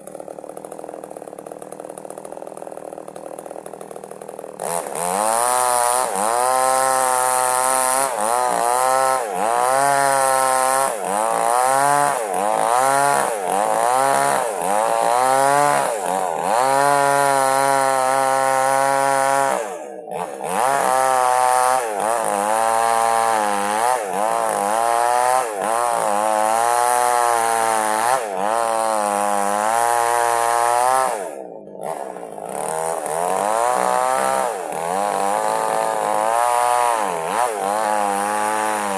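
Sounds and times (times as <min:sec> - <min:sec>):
chainsaw cutting log: 0:00.0 - 0:38.9.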